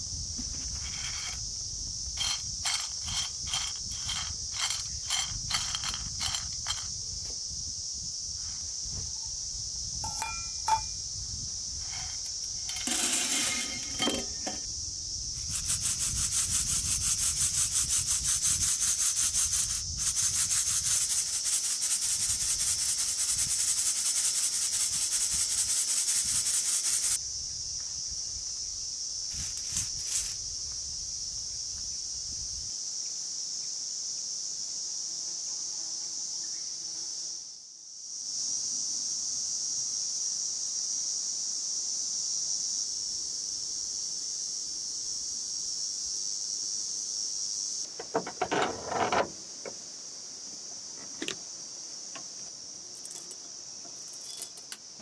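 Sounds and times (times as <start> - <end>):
high insect chirring: 0.0 - 55.0
rhythmic rasping scrape: 11.8 - 14.6
short clatters: 11.8 - 14.7, 47.9 - 49.8.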